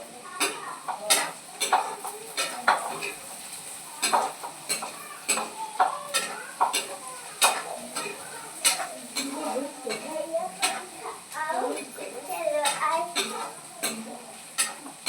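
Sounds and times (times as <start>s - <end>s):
food sizzling in a pan: 0.0s - 15.0s
utensil scraping and knocking pan: 0.4s - 15.0s.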